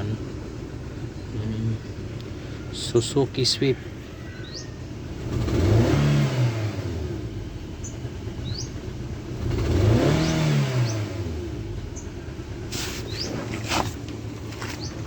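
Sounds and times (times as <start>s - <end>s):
car engine revving: 4.5s - 15.0s.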